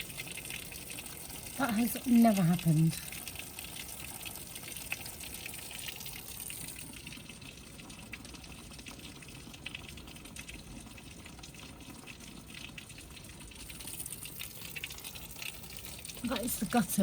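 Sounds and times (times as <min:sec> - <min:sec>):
water splashing from gutter: 0:00.0 - 0:17.0.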